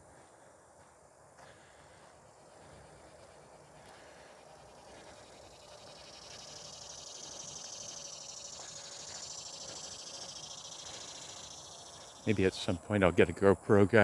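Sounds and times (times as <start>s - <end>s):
insects trilling: 0.9s - 14.0s.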